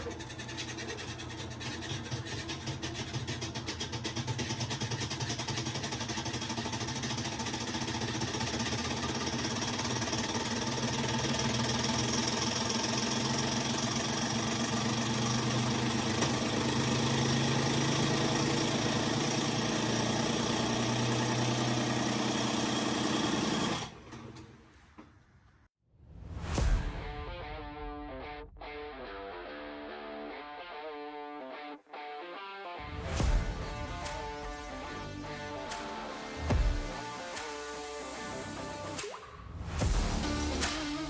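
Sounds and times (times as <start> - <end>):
washing machine mechanical noise: 0.0 - 24.6.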